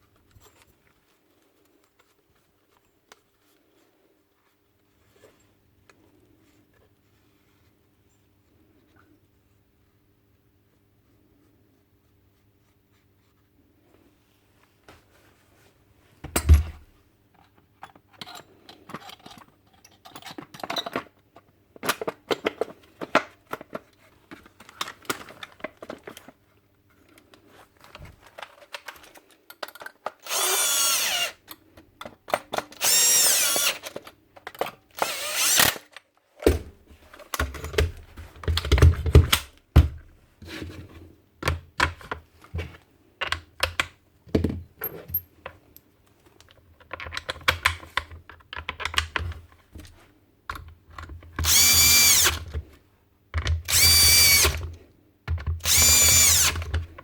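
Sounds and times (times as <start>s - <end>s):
clicks and knocks of tools: 17.3s - 26.3s, 27.2s - 39.6s
power drill whirring: 30.2s - 31.4s, 32.8s - 34.0s, 34.9s - 35.8s, 51.4s - 52.5s, 53.7s - 54.7s, 55.6s - 56.7s.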